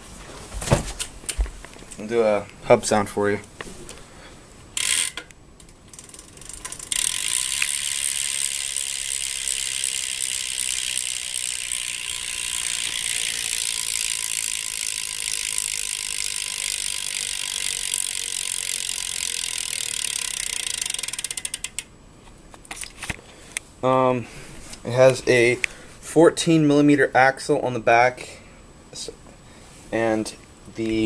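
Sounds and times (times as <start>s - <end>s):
bicycle hub clicking: 4.8s - 21.9s.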